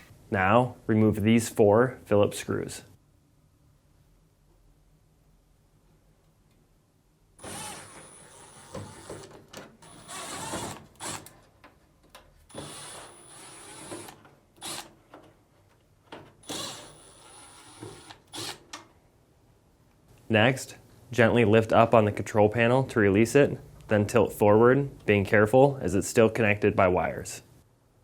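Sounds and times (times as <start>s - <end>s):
power screwdriver whirring: 7.4s - 11.3s, 12.5s - 14.9s, 16.4s - 18.6s.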